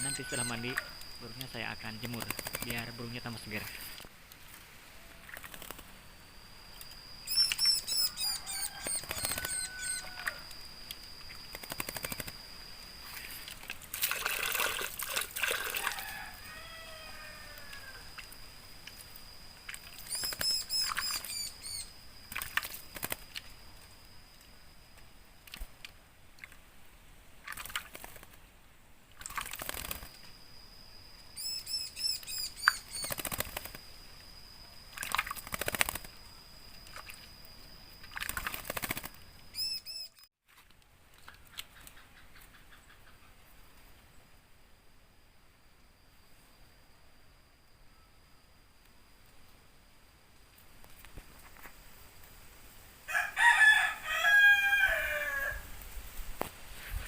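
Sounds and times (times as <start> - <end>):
bird chirps: 0.0 - 3.7, 6.7 - 10.3, 19.9 - 22.0, 31.2 - 33.7, 39.1 - 40.3
bird wing-flapping and splashing: 2.0 - 2.9, 5.2 - 6.0, 8.5 - 10.4, 11.3 - 12.4, 13.0 - 16.2, 19.6 - 21.4, 22.2 - 23.6, 27.4 - 28.5, 29.1 - 30.3, 32.5 - 33.9, 34.9 - 36.2, 36.8 - 37.3, 38.0 - 39.4.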